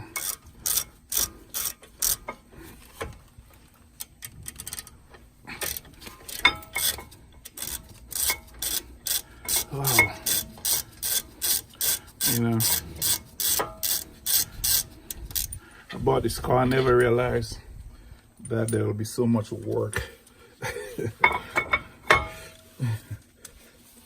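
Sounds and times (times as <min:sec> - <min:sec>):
ratchet wrench clicking: 0:00.0 - 0:02.4, 0:04.0 - 0:05.0, 0:05.6 - 0:15.6.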